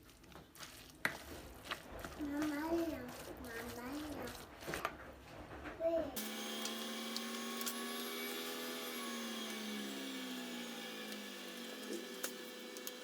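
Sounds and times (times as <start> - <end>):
small electric motor running: 6.2 - 13.0.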